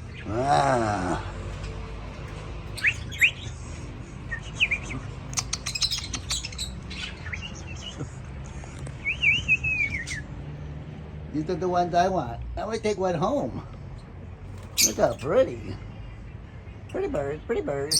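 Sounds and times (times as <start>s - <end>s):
birds chirping and whistling: 0.0s - 10.5s, 14.6s - 15.5s, 17.7s - 17.9s.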